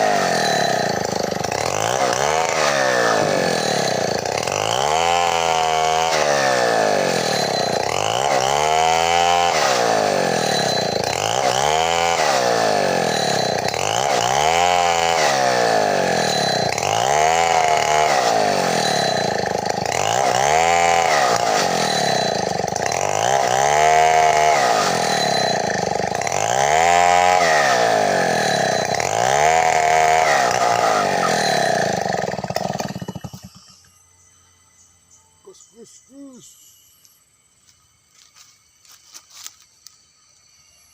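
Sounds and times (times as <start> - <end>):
chainsaw ripping a log: 0.0 - 33.8.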